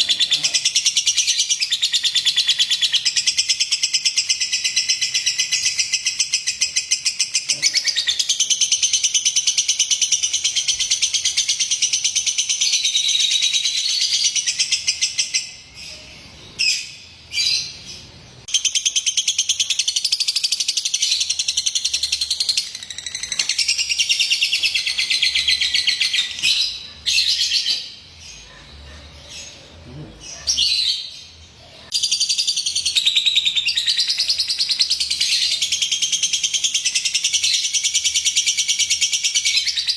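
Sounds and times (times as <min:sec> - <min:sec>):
lovebird chattering: 0:00.0 - 0:15.7.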